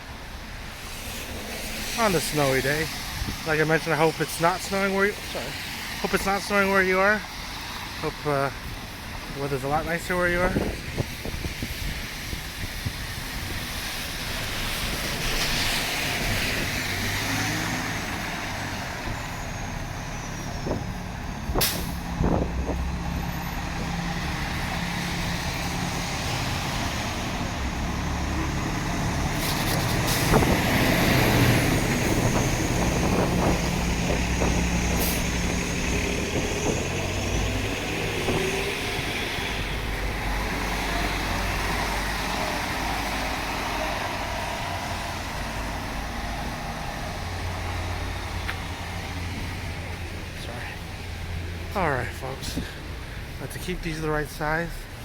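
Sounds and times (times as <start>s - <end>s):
road noise: 0.0s - 55.0s
heavy vehicle engine running: 16.6s - 53.4s.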